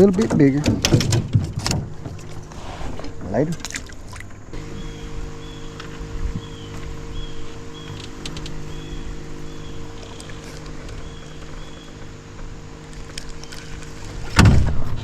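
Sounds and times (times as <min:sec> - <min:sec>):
small electric motor humming: 0:04.5 - 0:14.3.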